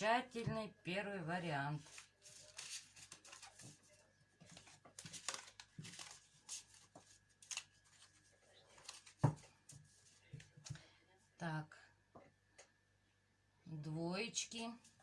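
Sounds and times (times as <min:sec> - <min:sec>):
cards rustling and clicking: 0:01.8 - 0:09.5.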